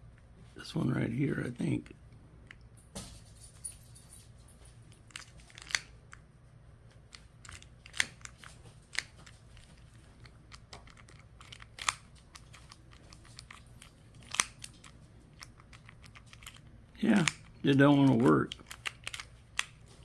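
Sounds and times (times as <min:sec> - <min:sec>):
faint low hum: 0:00.0 - 0:20.0
lock cylinder clicking and scraping: 0:09.9 - 0:19.8.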